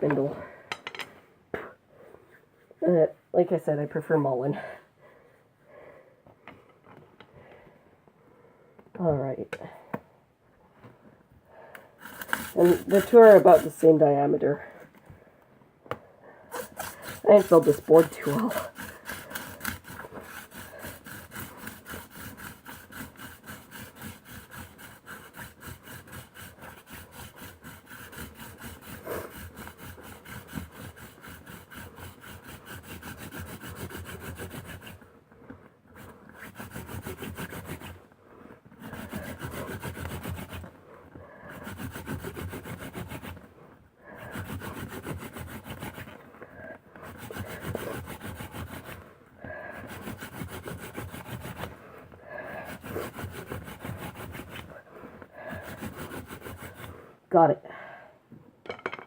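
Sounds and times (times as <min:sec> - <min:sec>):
spindle grinding in wooden board: 0:12.0 - 0:13.9, 0:16.5 - 0:38.0, 0:38.7 - 0:40.8, 0:41.5 - 0:43.5, 0:44.2 - 0:46.2, 0:46.9 - 0:49.1, 0:49.7 - 0:51.8, 0:52.5 - 0:54.8, 0:55.5 - 0:57.0.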